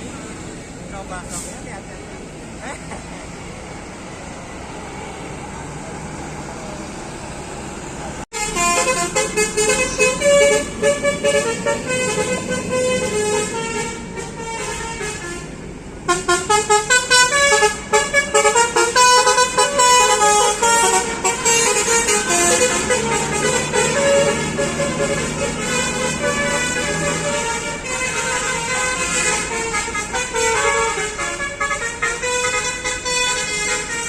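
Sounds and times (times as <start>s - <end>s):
traffic hum: 0.0s - 34.0s
multi-tone air horns playing tune: 8.3s - 34.0s.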